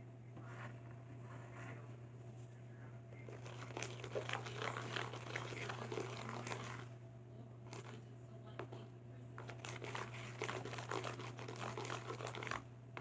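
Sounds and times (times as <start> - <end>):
low electrical hum: 0.0 - 13.0
slime squelching while stirred: 3.2 - 6.9, 7.7 - 8.0, 9.4 - 12.6.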